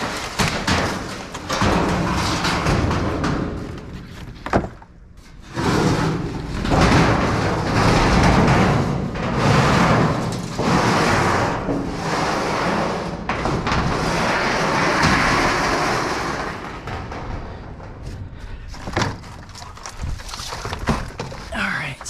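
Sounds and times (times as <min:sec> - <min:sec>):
metal scraping in a dumpster: 0:05.2 - 0:21.5.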